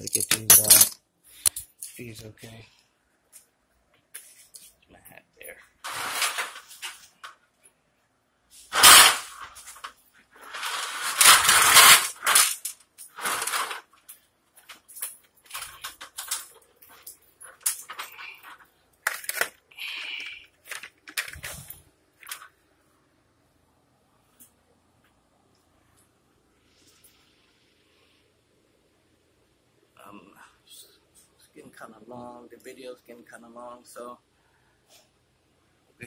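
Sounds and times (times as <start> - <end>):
handling rustle: 20.6 - 22.6.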